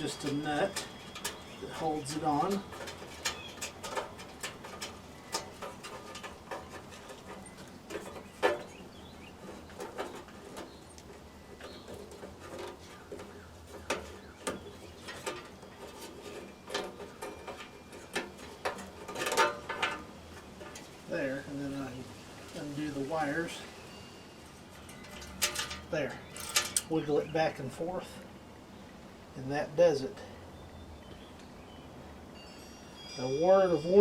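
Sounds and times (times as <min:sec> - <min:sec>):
metal clicks and knocks: 0:00.0 - 0:20.9, 0:24.6 - 0:27.0.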